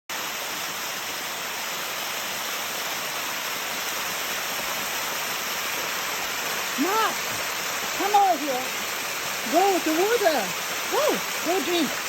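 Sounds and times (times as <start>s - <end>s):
waterfall rushing: 0.1s - 12.0s.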